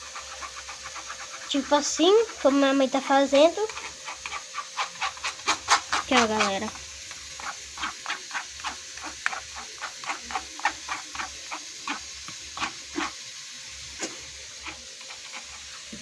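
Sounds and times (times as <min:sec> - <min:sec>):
spoon scraping a sieve: 0:00.0 - 0:16.0.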